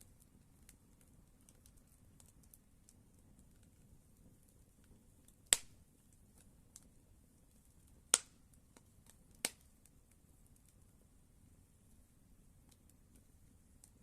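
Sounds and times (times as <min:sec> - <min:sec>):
campfire crackling: 0:00.0 - 0:14.0
sharp pop of burning wood: 0:05.3 - 0:05.9, 0:08.1 - 0:09.7.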